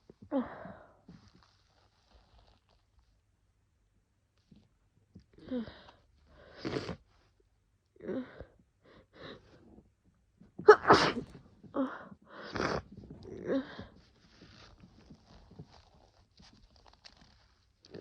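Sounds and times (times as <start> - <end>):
woman sneezing: 10.7 - 11.4.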